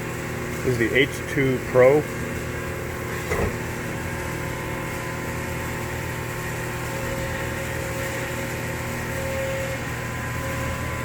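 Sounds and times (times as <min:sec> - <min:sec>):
machinery hum: 0:00.0 - 0:11.0.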